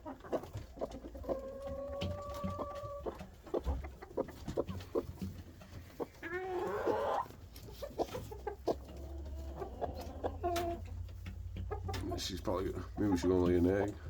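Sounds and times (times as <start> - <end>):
hens clucking: 0.0 - 14.0.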